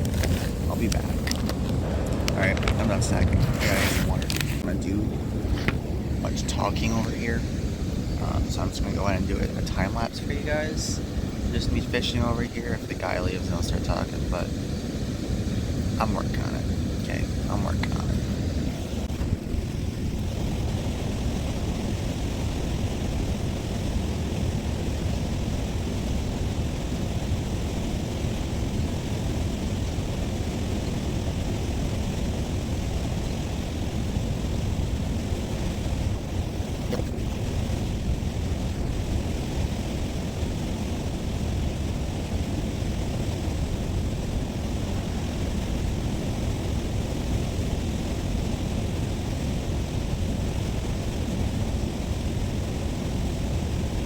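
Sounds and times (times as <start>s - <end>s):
wind buffeting microphone: 0.0s - 54.0s.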